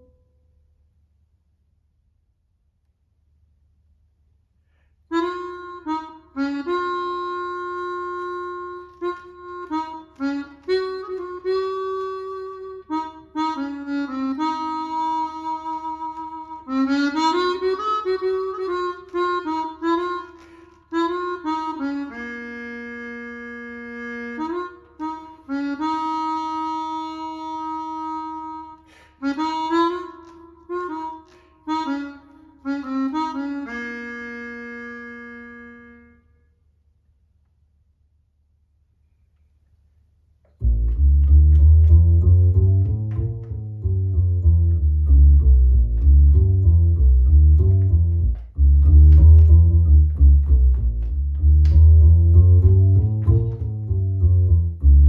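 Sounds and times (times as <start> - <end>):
digital wind instrument melody: 5.1 - 36.3.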